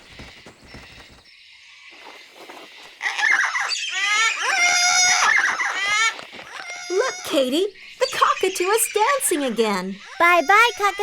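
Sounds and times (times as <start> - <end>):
cartoon cockatoo chirps and squawks: 3.0 - 7.4, 10.0 - 11.0.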